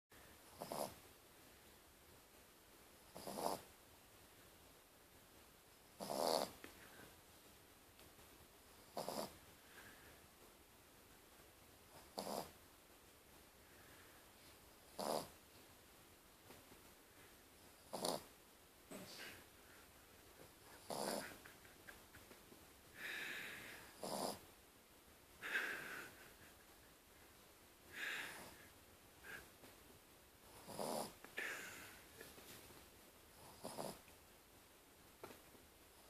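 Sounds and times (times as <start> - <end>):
faint room hiss: 0.1 - 36.0
dog snoring: 0.4 - 1.0, 3.1 - 3.7, 5.9 - 6.6, 8.8 - 9.4, 11.9 - 12.6, 14.9 - 15.4, 17.8 - 18.3, 20.7 - 21.4, 23.0 - 24.4, 30.5 - 31.2, 33.4 - 34.1.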